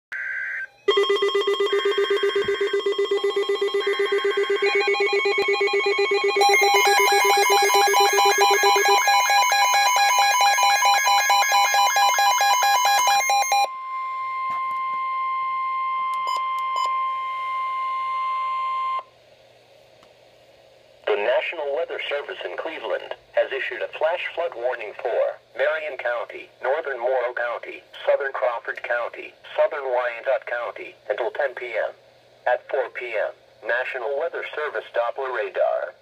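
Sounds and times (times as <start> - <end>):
pulsing layered alarm tones: 0.2 - 16.8
steady alert tone: 0.9 - 13.7.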